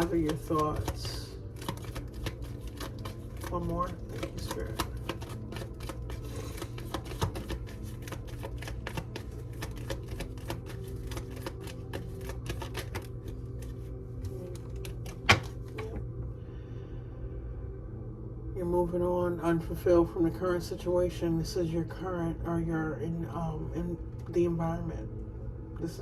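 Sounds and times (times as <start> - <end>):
cards being shuffled: 0.0 - 16.0.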